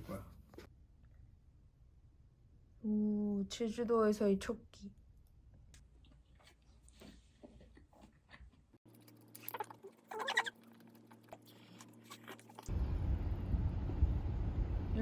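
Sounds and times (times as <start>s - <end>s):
high squeaky calls: 9.5s - 10.8s.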